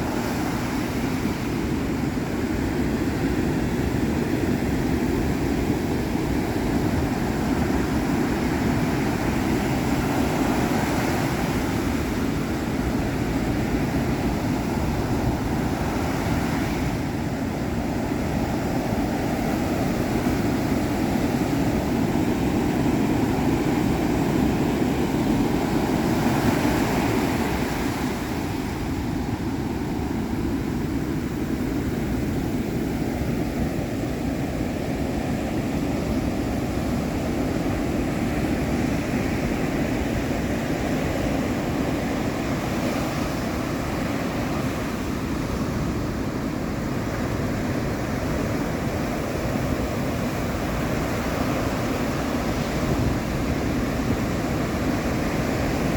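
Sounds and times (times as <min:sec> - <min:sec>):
ocean surf rushing: 0:00.0 - 0:55.9.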